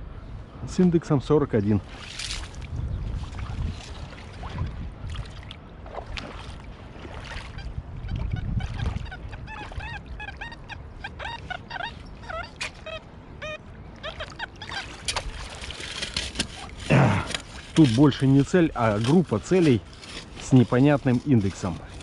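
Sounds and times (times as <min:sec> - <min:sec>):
water sloshing: 0:01.7 - 0:22.0.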